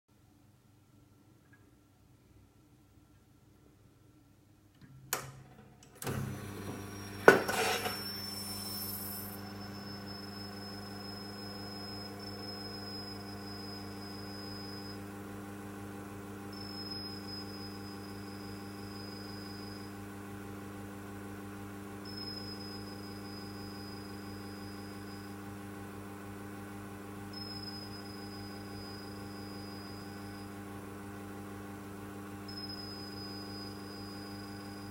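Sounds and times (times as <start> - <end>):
steady mains hum: 0.2 - 34.9
thin high whistle: 6.9 - 15.0.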